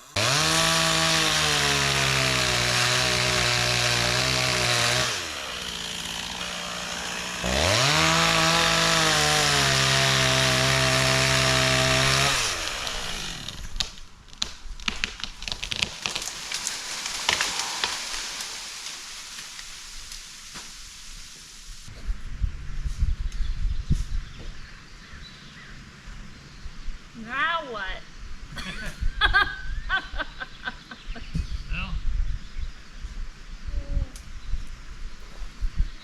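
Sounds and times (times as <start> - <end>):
chainsaw cutting into tree: 0.0 - 14.0
cracks and rustling: 13.6 - 20.7.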